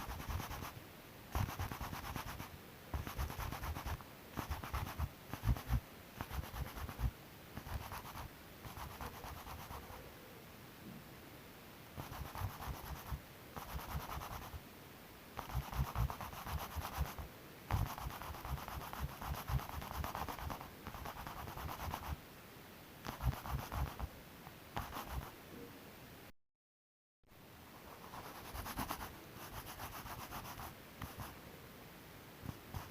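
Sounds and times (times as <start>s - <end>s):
hand sanding strokes: 1.4s - 9.8s.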